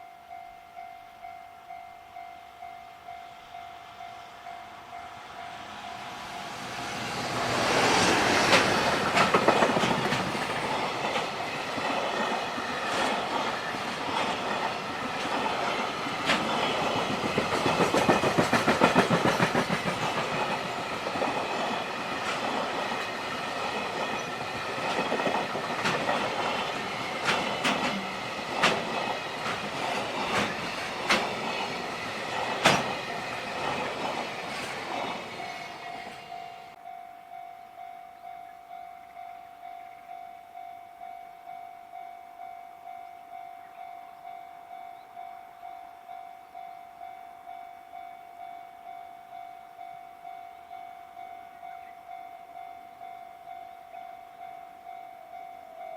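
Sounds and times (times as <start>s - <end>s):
level crossing warning bell: 0.0s - 8.1s, 8.8s - 55.9s
train wheels clattering: 6.5s - 36.5s.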